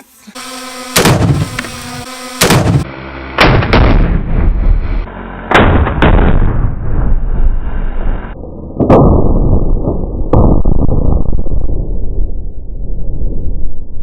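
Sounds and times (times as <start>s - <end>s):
rifle shot crack: 1.0s - 1.7s, 2.4s - 2.8s
explosive target booms: 1.0s - 14.0s.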